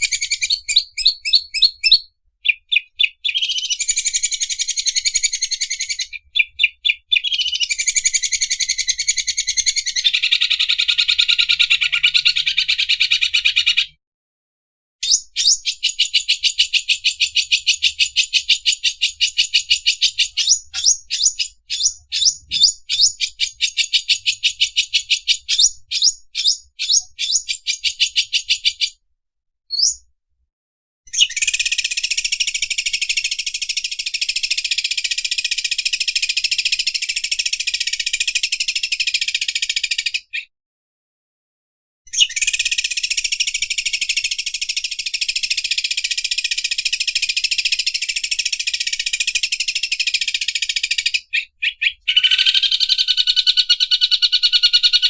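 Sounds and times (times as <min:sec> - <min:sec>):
bird singing rapid chattering notes: 0:00.0 - 0:14.0, 0:15.0 - 0:29.0, 0:29.7 - 0:30.1, 0:42.1 - 0:55.0.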